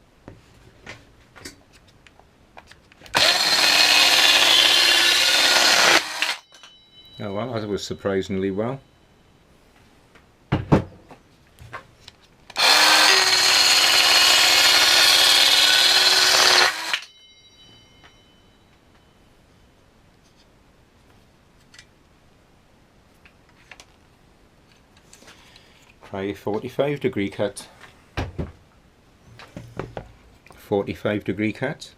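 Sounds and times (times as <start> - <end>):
circular saw running: 3.1 - 6.4, 12.5 - 17.1.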